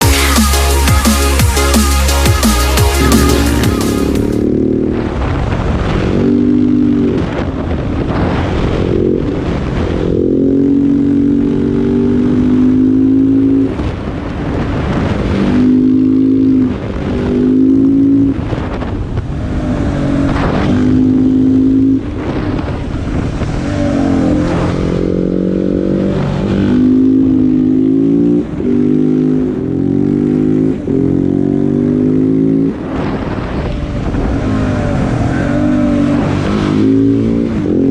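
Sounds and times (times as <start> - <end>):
motorcycle engine accelerating: 0.0 - 37.9.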